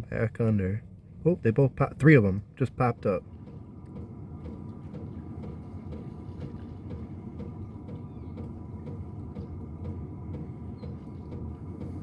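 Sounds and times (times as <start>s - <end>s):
low machine hum: 0.0s - 12.0s
faint regular ticking: 2.6s - 12.0s.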